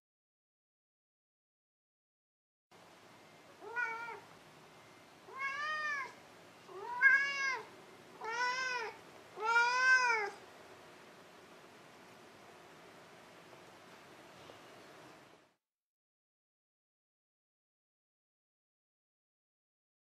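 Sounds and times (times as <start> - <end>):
cat meowing: 3.6 - 4.2, 5.3 - 10.4.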